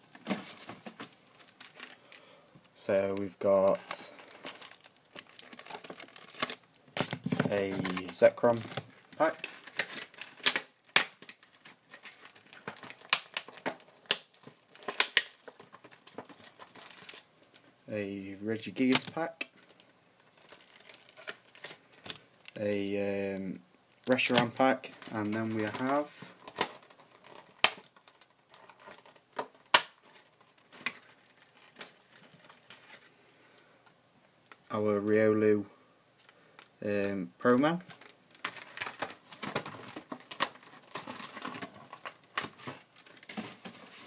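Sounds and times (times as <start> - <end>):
foil and plastic packaging crinkling: 0.1 - 2.4, 3.2 - 17.7, 18.8 - 22.9, 24.0 - 33.2, 37.7 - 44.0.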